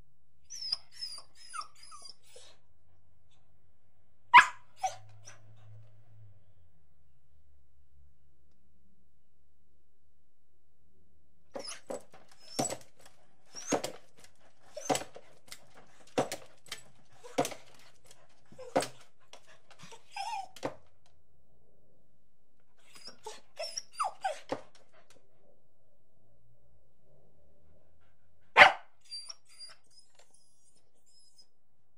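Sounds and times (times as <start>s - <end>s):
dog barking: 4.3s - 5.0s, 28.5s - 29.0s.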